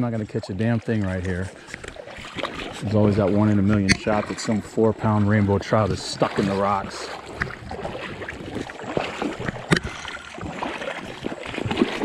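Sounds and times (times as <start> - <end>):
stream water gurgling over rocks: 0.0 - 12.0.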